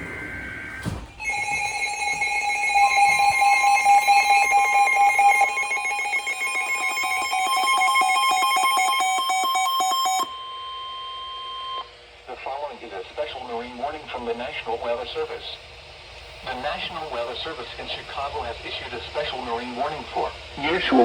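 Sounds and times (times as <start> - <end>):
steady single tone: 1.2 - 9.0
digital data burst: 1.2 - 10.2
multi-pitch alarm tone: 1.2 - 11.9.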